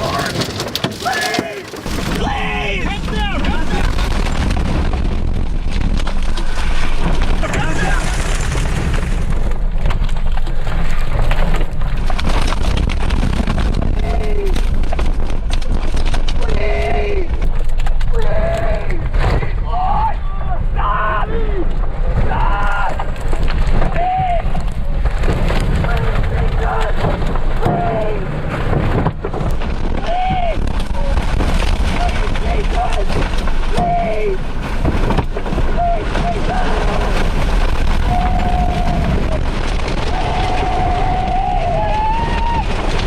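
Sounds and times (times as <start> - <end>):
rain and debris clattering: 0.0 - 19.6, 21.7 - 43.0
wind: 0.0 - 43.0
loud deep steady rumble: 1.8 - 20.8.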